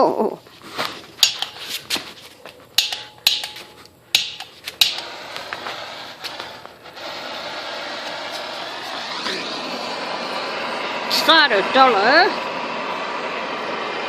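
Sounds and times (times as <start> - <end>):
igniter clicks: 2.8 - 6.8
torch flame hissing: 4.1 - 14.0.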